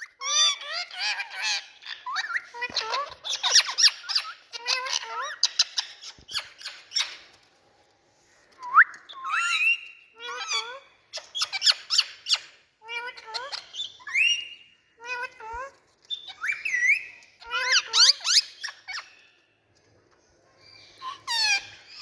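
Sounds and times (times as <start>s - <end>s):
parrots chattering and squawking: 0.0s - 7.5s, 8.2s - 19.4s, 20.6s - 22.0s.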